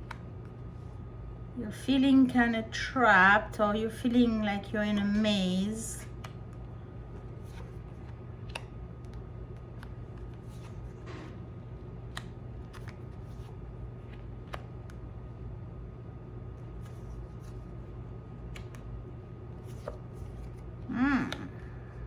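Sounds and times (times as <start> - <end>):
cards tapping and sliding: 0.0 - 0.6, 6.0 - 11.4, 12.0 - 15.0, 18.4 - 18.9, 19.6 - 20.7
steady low hum: 0.0 - 22.0.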